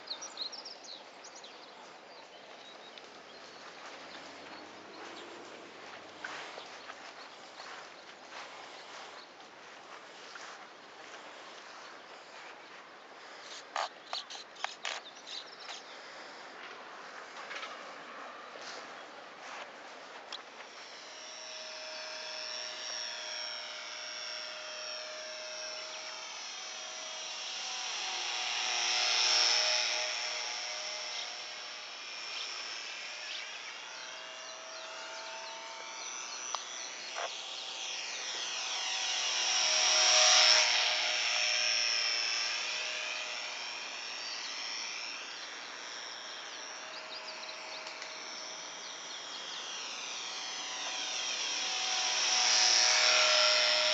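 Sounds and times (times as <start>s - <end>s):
model plane motor whining: 17.3s - 53.9s.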